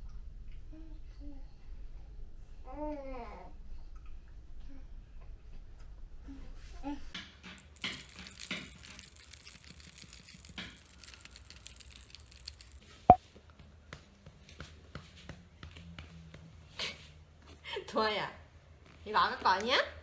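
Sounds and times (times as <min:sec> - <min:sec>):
small clicks: 0:07.6 - 0:12.9.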